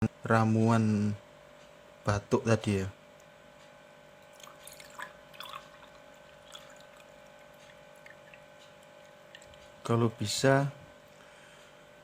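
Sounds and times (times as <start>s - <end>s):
steady electrical hum: 0.0s - 12.0s
liquid splashes and drips: 4.2s - 9.8s.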